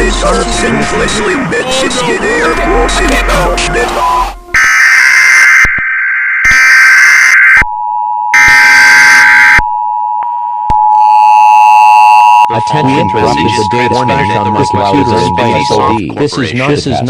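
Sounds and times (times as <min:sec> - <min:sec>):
steady two-tone attention signal: 0:00.1 - 0:04.7, 0:11.0 - 0:16.0.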